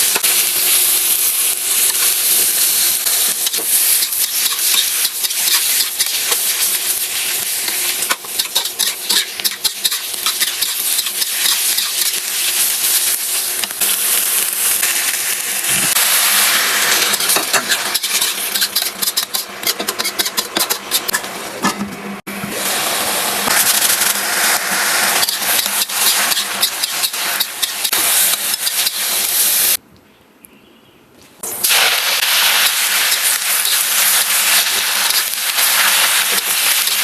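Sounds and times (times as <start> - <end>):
food sizzling in a pan: 0.0 - 19.5, 22.4 - 29.8, 31.4 - 37.0
spatula scraping a pan: 7.6 - 12.2, 16.9 - 21.9, 25.2 - 29.0.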